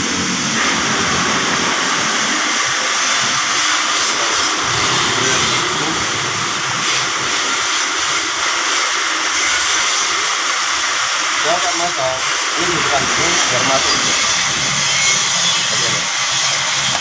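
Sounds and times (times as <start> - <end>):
loud rushing hiss: 0.0 - 16.9.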